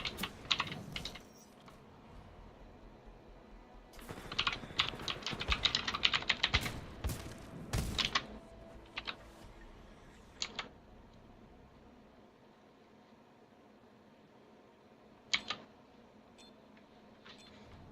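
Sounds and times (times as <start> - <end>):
clicky mechanical keyboard typing: 0.0 - 1.2, 10.4 - 10.7, 15.3 - 15.7.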